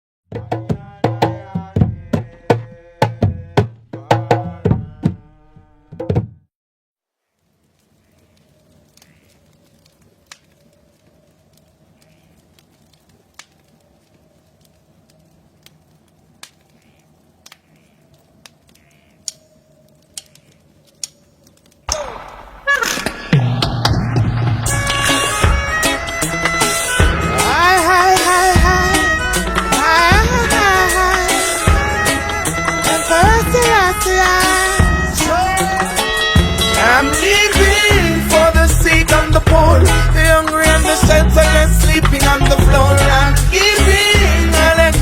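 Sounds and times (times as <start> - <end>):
sharp single clicks: 18.4 - 19.5
pitched hand drum strikes: 21.9 - 30.6
loud music: 21.9 - 45.0.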